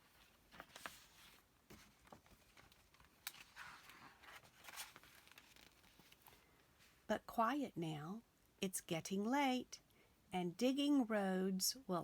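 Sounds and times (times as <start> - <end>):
paper rustling: 0.0 - 7.0.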